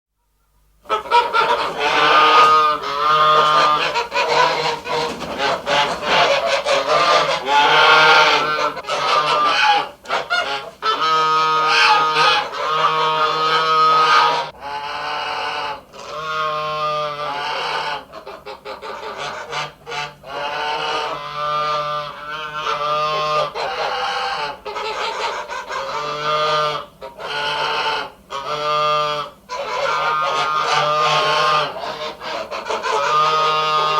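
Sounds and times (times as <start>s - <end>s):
ducks quacking: 0.8s - 33.9s.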